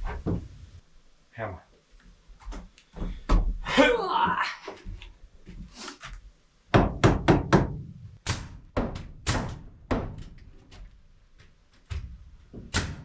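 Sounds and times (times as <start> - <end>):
hammer driving nails into wood: 6.7 - 10.8, 11.9 - 13.0.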